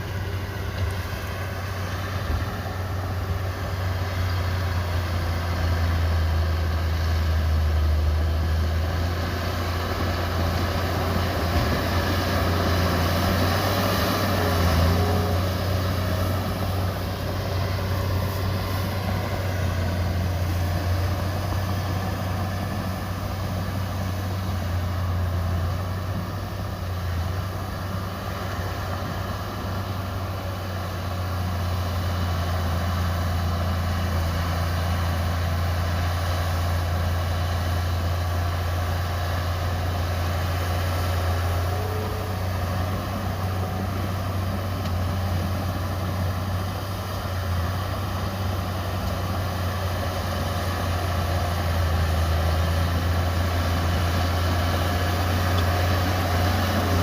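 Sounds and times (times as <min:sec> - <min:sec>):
heavy diesel engine droning: 0:00.0 - 0:57.0.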